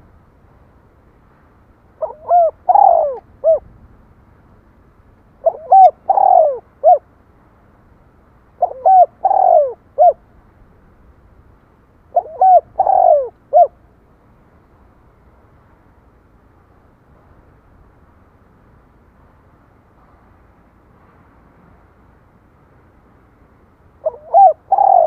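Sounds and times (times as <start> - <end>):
dove cooing: 2.0 - 3.6, 5.4 - 7.0, 8.6 - 10.2, 12.1 - 13.8, 24.0 - 25.0.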